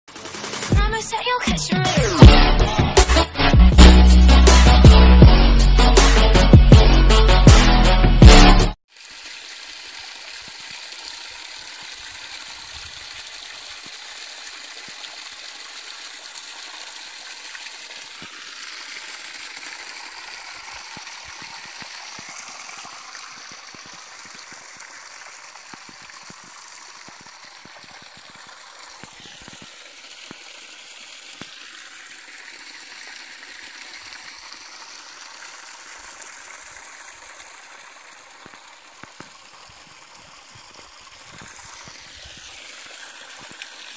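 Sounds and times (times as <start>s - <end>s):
rushing water: 8.9s - 43.9s.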